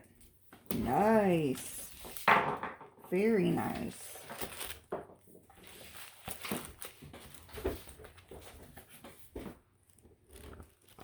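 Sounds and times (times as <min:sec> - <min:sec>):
soft taps and paper rustling: 0:04.2 - 0:11.0.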